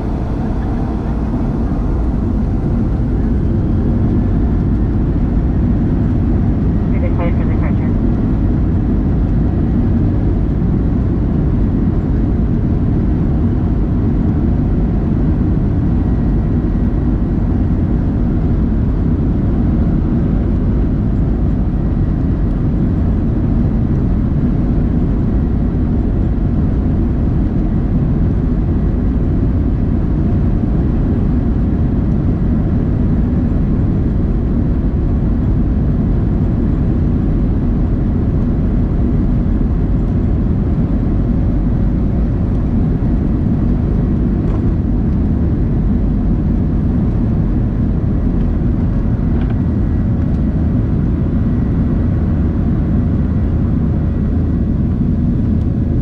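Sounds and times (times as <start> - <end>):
airflow: 0.0 - 5.6
jet engine roar in cabin: 0.0 - 56.0.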